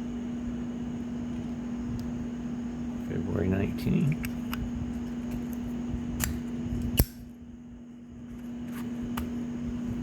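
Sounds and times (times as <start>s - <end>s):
steady low hum: 0.0s - 10.0s
lighters clicking and clacking: 7.0s - 7.2s.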